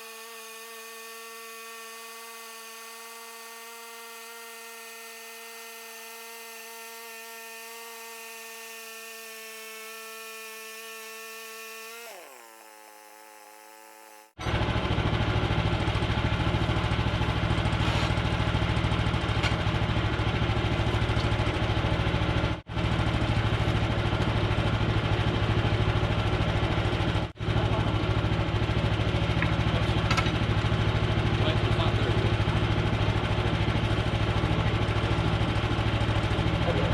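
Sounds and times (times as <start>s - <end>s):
small electric motor whining: 0.0s - 14.6s
gasoline engine running loud: 14.4s - 36.9s.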